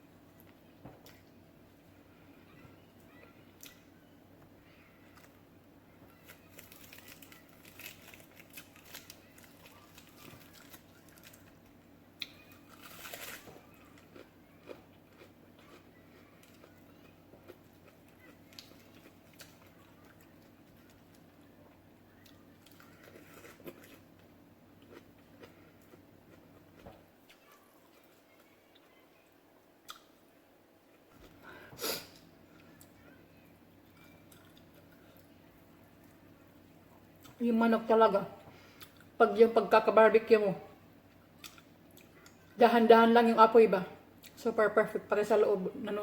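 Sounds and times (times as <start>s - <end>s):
person chewing and crunching: 6.1s - 11.6s, 12.2s - 28.5s, 33.8s - 35.3s.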